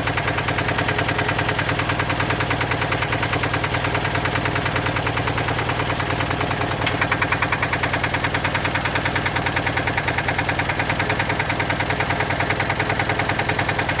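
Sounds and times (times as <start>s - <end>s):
car engine idling: 0.0s - 14.0s
sharp click: 6.8s - 7.1s.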